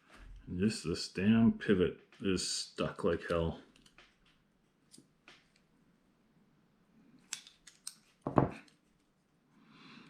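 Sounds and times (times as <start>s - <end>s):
metallic clicks of knife parts: 7.2s - 8.8s.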